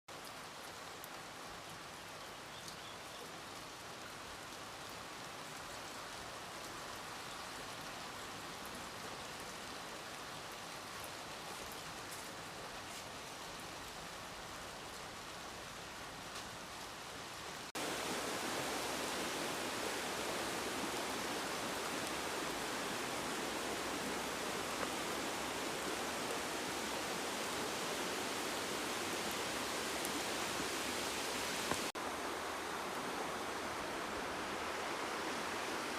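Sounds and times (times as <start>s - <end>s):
steady rain: 0.1s - 35.9s
dense rush of water: 17.5s - 35.9s
rain drop ticks: 24.6s - 25.1s.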